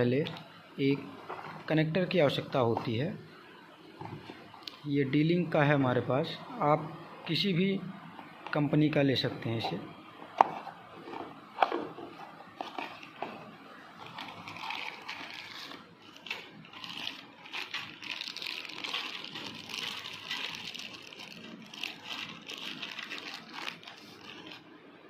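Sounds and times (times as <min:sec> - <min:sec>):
plastic packet crinkling: 0:11.0 - 0:24.7.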